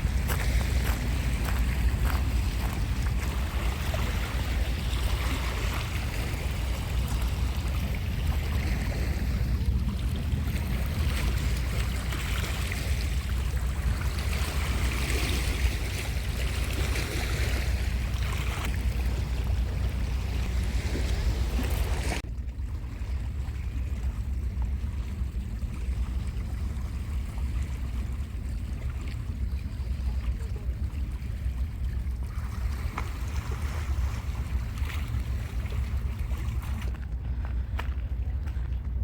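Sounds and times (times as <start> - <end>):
sea surf washing on shore: 0.0 - 22.2, 29.4 - 37.0
wind rumble on microphone: 0.0 - 39.0.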